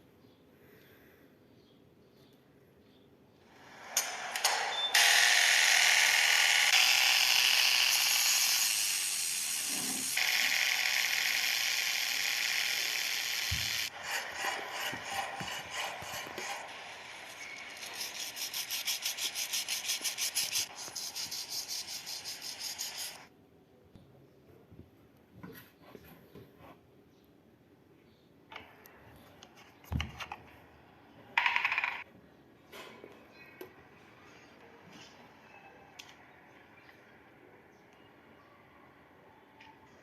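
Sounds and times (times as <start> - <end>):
rasping sanding strokes: 13.9 - 23.3
sanding metal: 13.9 - 23.3.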